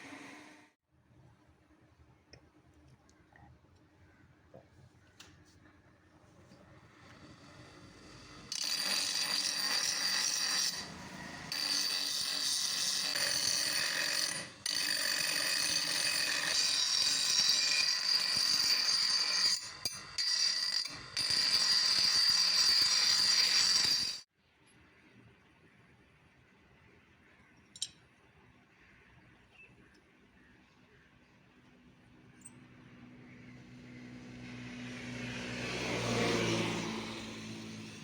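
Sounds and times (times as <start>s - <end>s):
power tool scraping metal: 6.9s - 24.2s.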